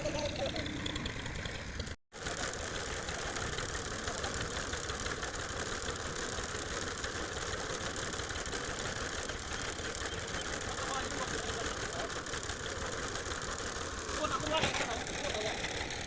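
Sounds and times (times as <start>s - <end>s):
chainsaw engine running: 0.0s - 16.0s.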